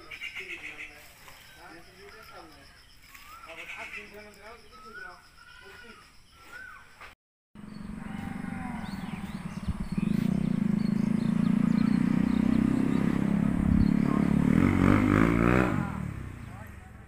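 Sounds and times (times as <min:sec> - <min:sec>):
birds chirping faintly: 0:00.0 - 0:17.0
small motorcycle engine passing: 0:07.6 - 0:17.0.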